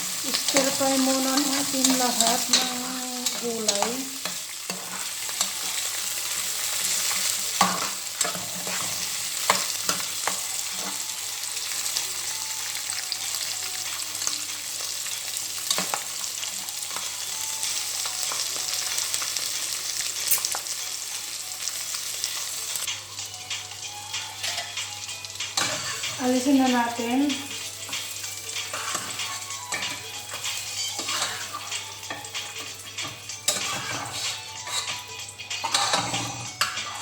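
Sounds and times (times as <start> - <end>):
vegetables sizzling in oil: 0.0 - 37.0
utensil scraping a pan: 6.8 - 11.0, 28.6 - 31.8, 33.0 - 37.0.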